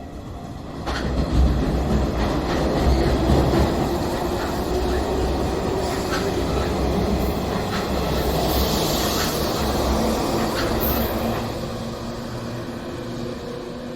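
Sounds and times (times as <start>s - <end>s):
train wheels rumbling on rail: 0.0s - 13.9s
wheels clicking over rail joints: 0.8s - 8.3s.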